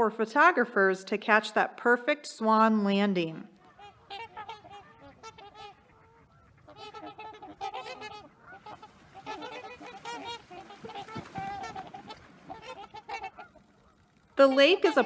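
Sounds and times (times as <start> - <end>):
waterfowl honking: 3.5 - 15.0.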